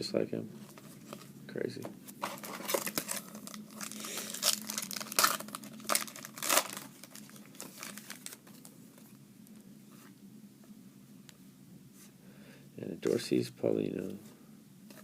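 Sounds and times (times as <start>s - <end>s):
plastic wrapper tearing and crinkling: 2.2s - 8.7s.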